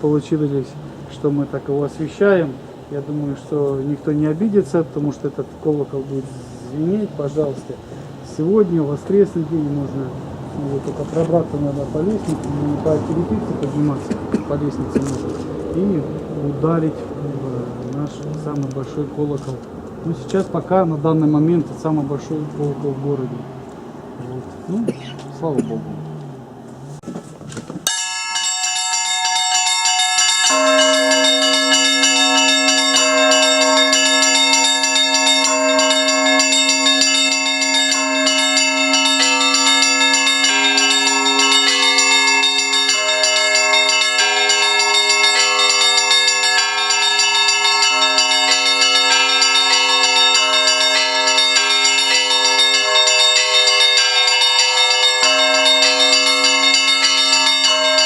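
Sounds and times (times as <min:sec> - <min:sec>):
church bells pealing: 0:00.0 - 0:19.4, 0:27.9 - 0:58.0
deep bell: 0:27.9 - 0:58.0.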